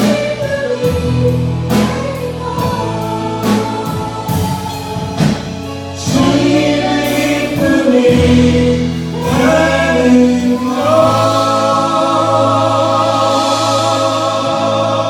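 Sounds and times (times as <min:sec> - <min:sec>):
choir singing: 0:05.9 - 0:15.0.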